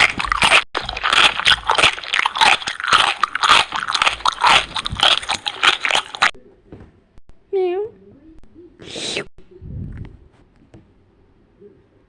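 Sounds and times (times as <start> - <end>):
crunching crisp food: 0.0 - 6.4.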